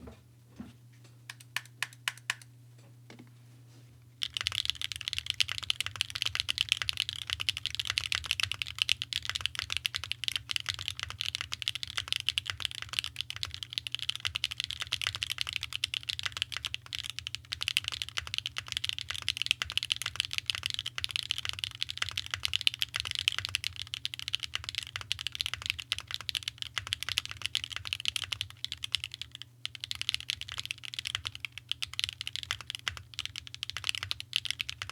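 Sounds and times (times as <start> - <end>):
mechanical keyboard typing: 4.2 - 34.9.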